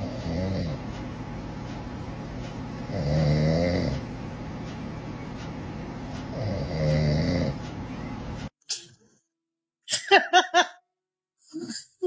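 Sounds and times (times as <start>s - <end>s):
man snoring: 0.0s - 0.8s, 2.9s - 4.0s, 6.3s - 7.6s.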